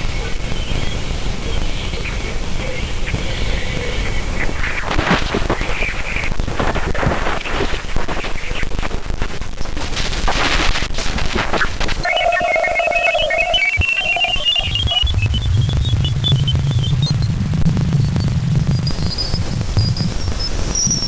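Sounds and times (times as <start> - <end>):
dense hiss with crackling static: 0.0 - 21.0
steady hum-like tone: 11.7 - 20.7
chirping beeping tones: 12.0 - 17.3.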